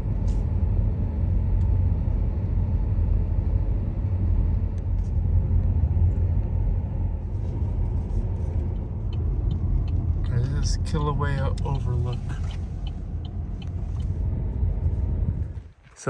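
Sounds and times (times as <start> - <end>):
car road and engine rumble: 0.0 - 16.0
faint ticks: 8.6 - 14.2.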